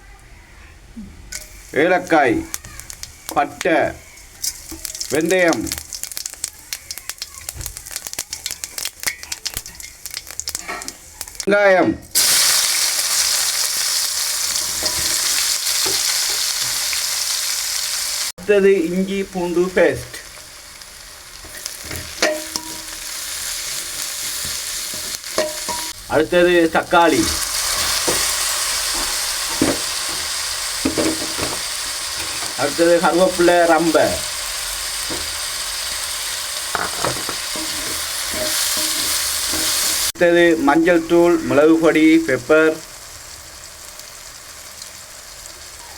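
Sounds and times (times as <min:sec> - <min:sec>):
onions sizzling in oil: 0:01.3 - 0:45.9
stirring knocks: 0:27.0 - 0:33.2, 0:36.7 - 0:40.0.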